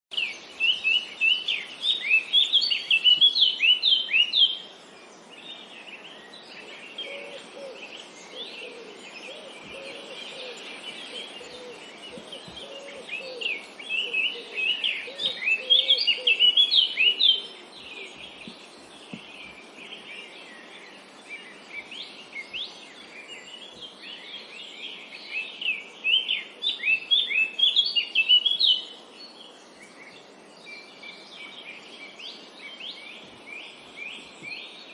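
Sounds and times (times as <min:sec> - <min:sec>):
songbirds chirping: 0:00.1 - 0:34.9
lower-pitched bird calls: 0:06.7 - 0:20.8.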